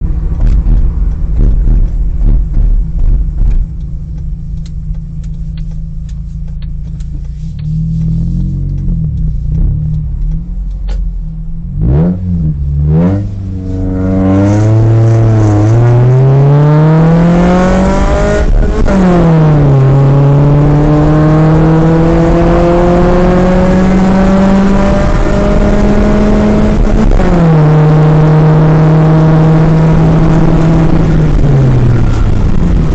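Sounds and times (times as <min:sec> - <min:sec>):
car engine revving: 0:00.0 - 0:32.9.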